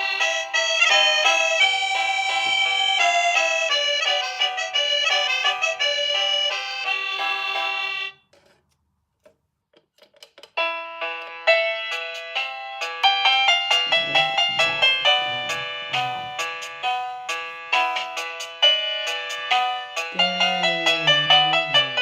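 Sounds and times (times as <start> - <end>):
electronic doorbell chime melody: 0.0 - 8.1.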